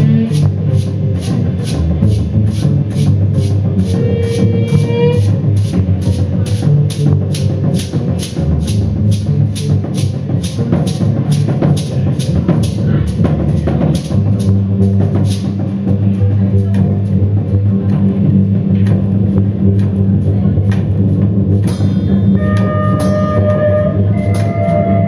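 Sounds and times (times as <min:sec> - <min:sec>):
low sustained tones: 0:00.0 - 0:25.0
sharp percussive strikes: 0:21.6 - 0:25.0.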